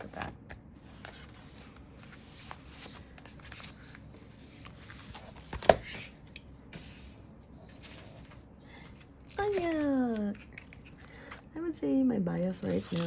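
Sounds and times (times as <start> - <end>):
photo cards and paper rustling: 0.0 - 11.7, 12.3 - 13.0.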